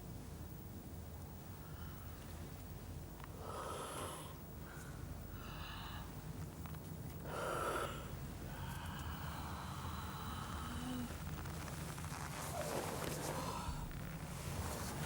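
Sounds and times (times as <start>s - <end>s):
steady low hum: 0.0s - 15.0s
person exhaling with hiss: 7.3s - 11.3s.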